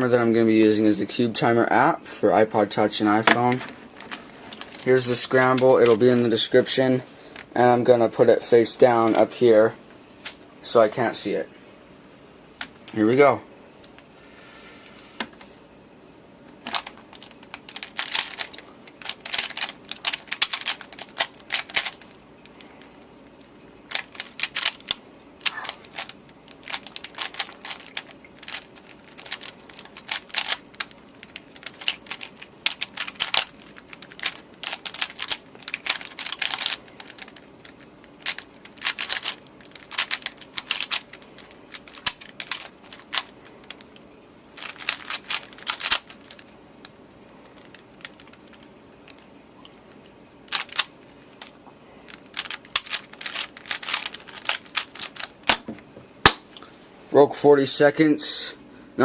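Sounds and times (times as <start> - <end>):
puzzle cube clattering clicks: 16.6 - 22.6, 23.9 - 44.0, 44.6 - 46.5, 47.4 - 49.2, 50.5 - 51.5, 52.1 - 56.4.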